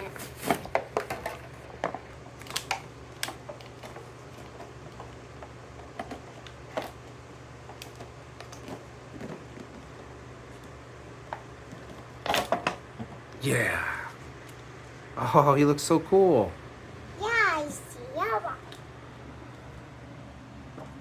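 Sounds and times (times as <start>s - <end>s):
packaging clicks and crinkles: 2.2s - 9.9s.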